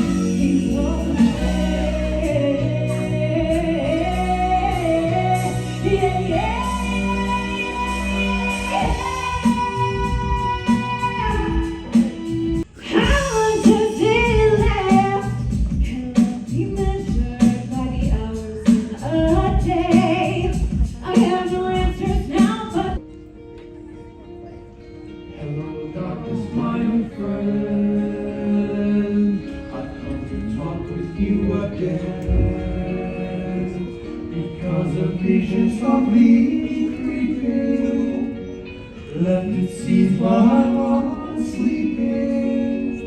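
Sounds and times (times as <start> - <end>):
band playing: 0.0 - 16.3, 30.2 - 36.4
woman singing: 0.0 - 23.0, 39.1 - 43.0
steady drum beat: 8.8 - 22.6.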